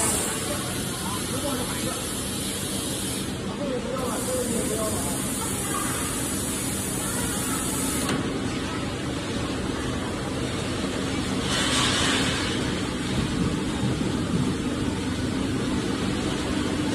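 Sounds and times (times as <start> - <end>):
machinery droning and hissing: 0.0 - 16.9.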